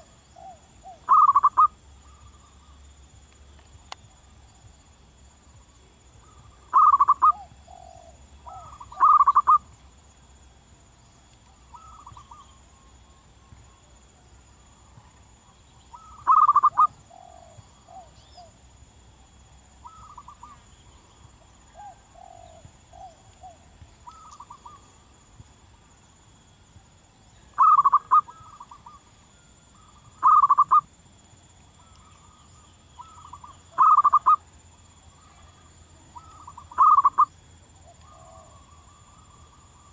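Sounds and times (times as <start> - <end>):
doves cooing: 0.0 - 2.3, 6.2 - 9.6, 15.9 - 18.5, 21.7 - 24.8, 27.6 - 29.0, 29.8 - 30.8, 33.0 - 34.4, 36.2 - 39.9.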